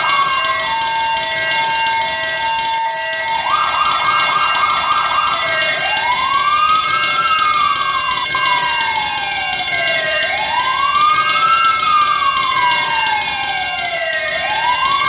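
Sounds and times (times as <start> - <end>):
electronic emergency sirens: 0.0 - 15.0.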